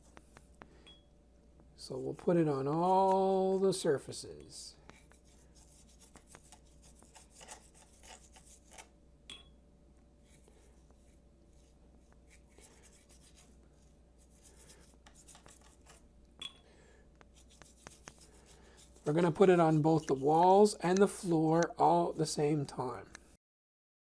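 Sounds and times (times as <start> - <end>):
paintbrush scratchy strokes: 0.0 - 0.6, 1.9 - 8.9, 10.2 - 16.1, 17.3 - 22.8.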